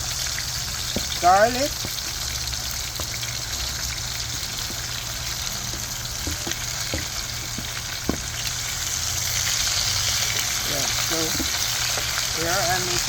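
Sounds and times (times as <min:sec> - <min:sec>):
oil sizzling in a pan: 0:00.0 - 0:13.0.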